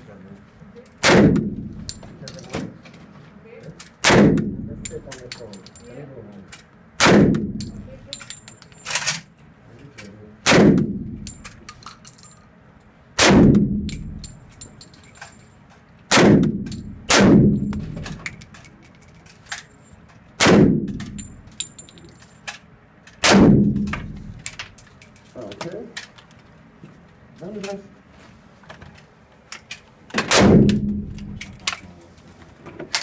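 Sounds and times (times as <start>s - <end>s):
gunshots: 1.0s - 1.7s, 4.0s - 4.6s, 7.0s - 7.6s, 10.4s - 11.1s, 13.2s - 13.9s, 16.1s - 17.9s, 20.4s - 21.1s, 23.2s - 24.3s, 30.2s - 31.2s
light metallic tinkles: 13.9s - 15.7s, 21.1s - 22.5s, 31.3s - 32.6s.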